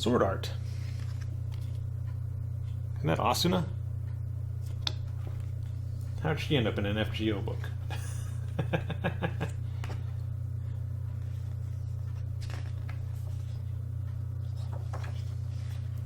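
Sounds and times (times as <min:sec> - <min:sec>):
low background hum: 0:00.0 - 0:16.0
soft page rustles: 0:00.6 - 0:01.9, 0:09.8 - 0:16.0.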